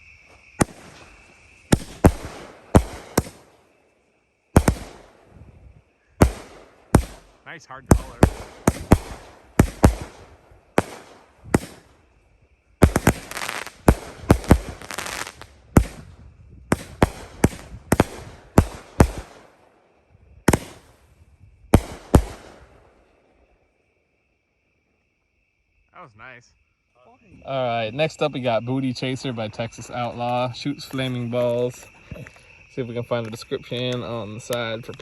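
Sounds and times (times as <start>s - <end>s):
firework bursts: 0.4s - 19.8s, 20.4s - 23.3s
rapid firework crackle: 0.6s - 3.7s, 4.6s - 5.4s, 6.2s - 12.1s, 12.8s - 19.6s, 20.5s - 21.1s, 21.7s - 22.9s.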